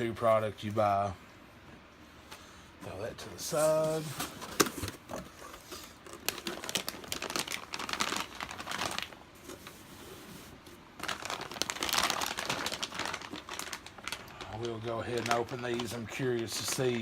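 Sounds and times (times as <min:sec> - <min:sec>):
packaging crinkling and rustling: 0:03.4 - 0:17.0.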